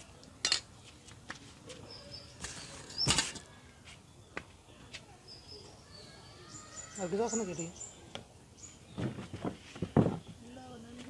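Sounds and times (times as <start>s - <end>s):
small birds chirping: 0.0s - 11.0s.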